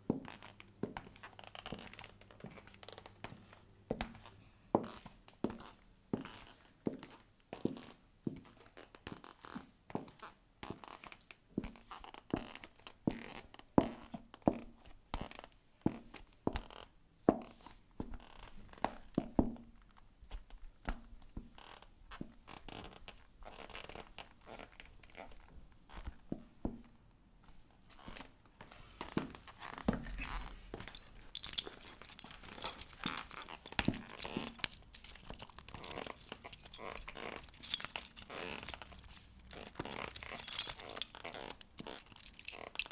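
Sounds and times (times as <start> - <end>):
leather creaking: 29.5 - 42.9
keys jingling at a lock: 29.6 - 42.9.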